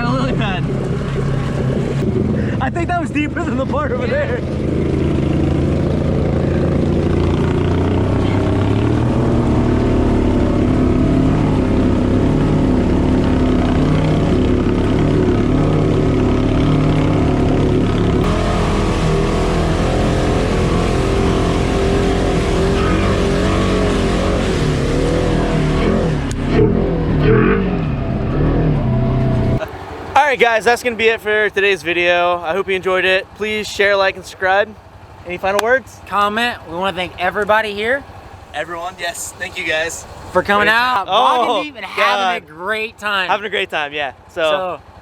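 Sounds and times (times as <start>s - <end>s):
vehicle engine running: 0.0s - 45.0s.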